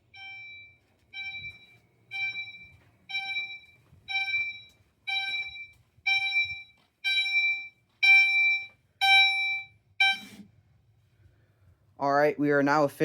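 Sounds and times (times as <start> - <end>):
fire alarm pulsing chime: 0.0 - 10.4.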